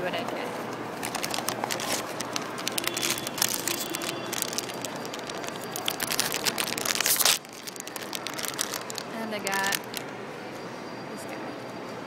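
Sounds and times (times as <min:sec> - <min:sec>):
packaging crinkling: 0:01.0 - 0:10.1.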